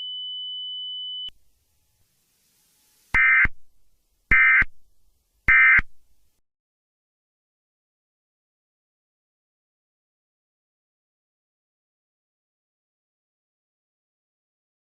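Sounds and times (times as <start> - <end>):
buzzy data tone bursts: 2.6 - 3.6, 4.3 - 4.7.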